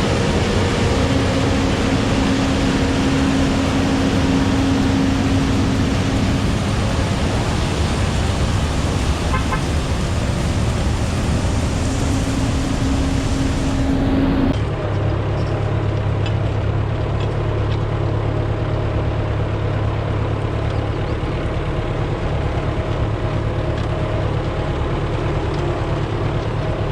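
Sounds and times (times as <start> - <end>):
tractor engine running: 0.0 - 14.6.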